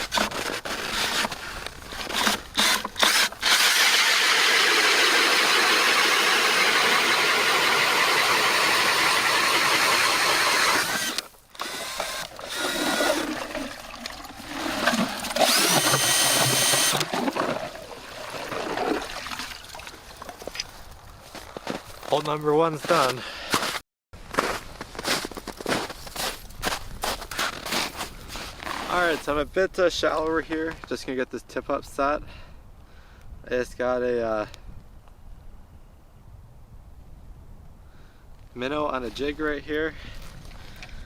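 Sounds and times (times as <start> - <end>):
ice auger grinding: 0.0 - 19.4.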